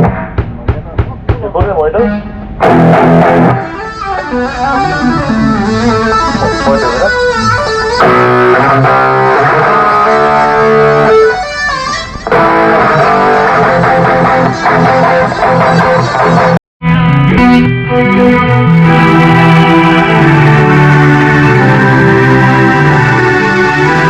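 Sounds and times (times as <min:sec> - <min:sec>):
electric guitar lead melody: 0:02.0 - 0:24.0.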